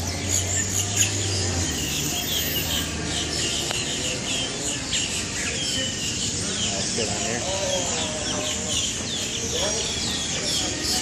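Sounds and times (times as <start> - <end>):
flock of birds chirping: 0.0 - 11.0.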